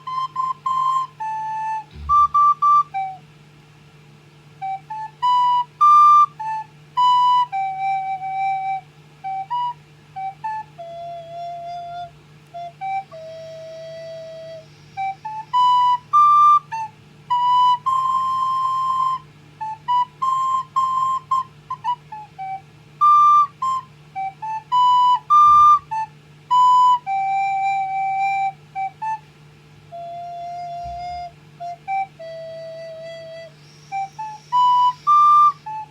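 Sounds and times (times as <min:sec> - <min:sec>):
recorder melody: 0:00.0 - 0:03.2, 0:04.6 - 0:35.9
steady low hum: 0:00.0 - 0:35.9.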